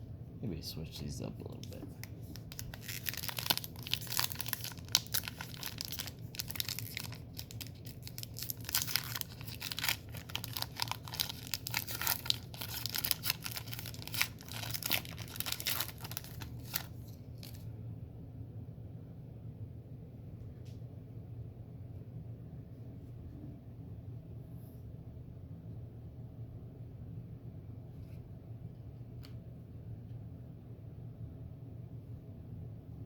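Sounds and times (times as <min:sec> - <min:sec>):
trading cards rustling and shuffling: 0:01.6 - 0:17.6.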